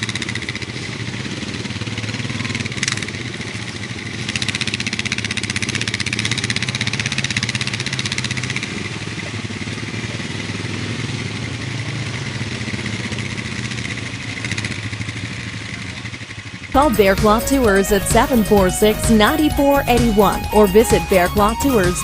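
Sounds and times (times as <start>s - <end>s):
quad bike engine running: 0.0s - 16.7s.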